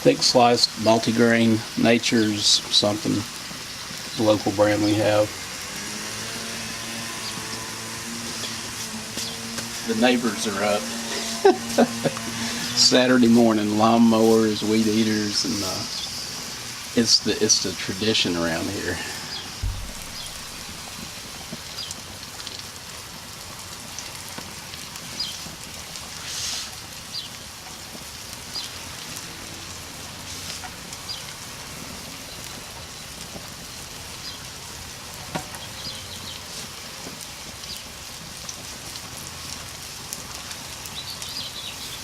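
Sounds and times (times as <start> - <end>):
food sizzling on a grill: 0.0 - 42.0
small pops and crackles: 8.3 - 9.8, 19.3 - 29.3, 30.3 - 42.0.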